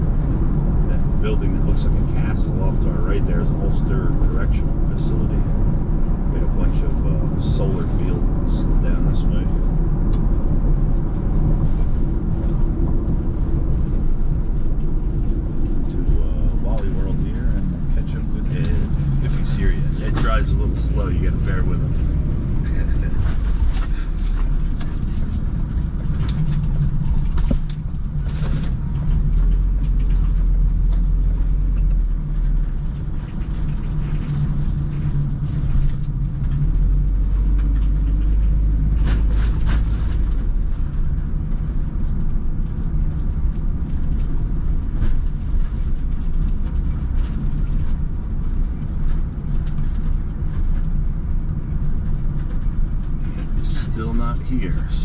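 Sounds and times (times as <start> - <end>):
road and engine rumble in car cabin: 0.0 - 55.0
interior clicks and creaks: 0.2 - 55.0.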